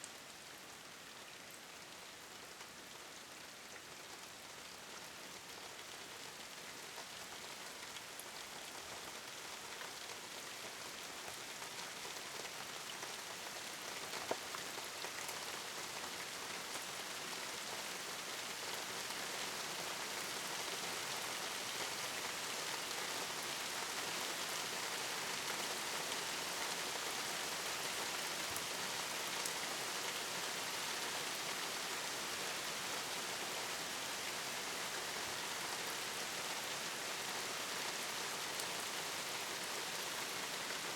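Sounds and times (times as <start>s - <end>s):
rain falling: 0.0s - 40.9s.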